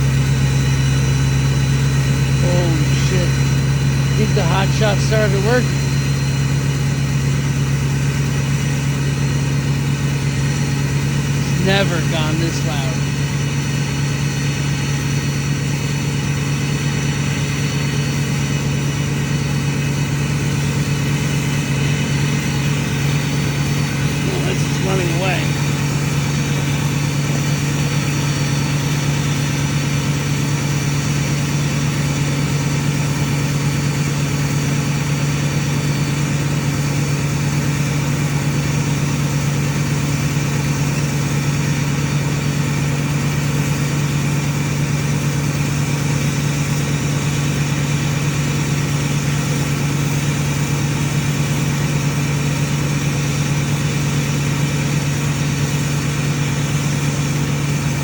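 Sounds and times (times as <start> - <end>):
diesel engine idling: 0.0 - 58.0
faint high whine: 22.6 - 26.4.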